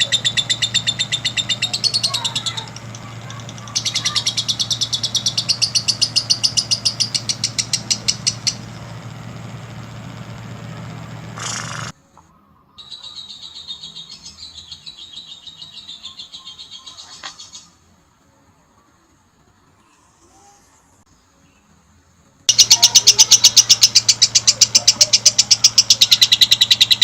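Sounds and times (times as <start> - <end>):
lovebird chattering trill: 0.0 - 11.9, 22.5 - 27.0.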